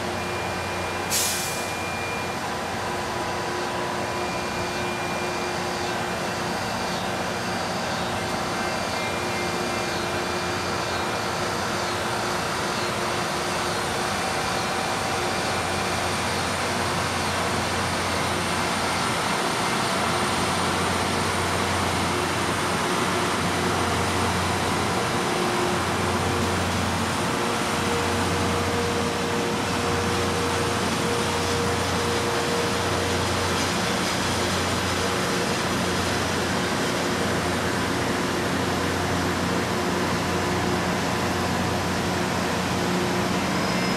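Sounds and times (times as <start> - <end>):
diesel engines running: 0.0 - 43.9.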